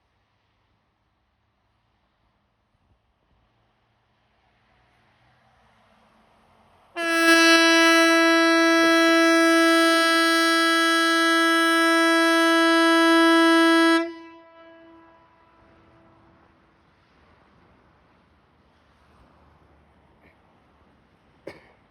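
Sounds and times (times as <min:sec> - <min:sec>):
warning siren steady tone: 0:07.0 - 0:15.0.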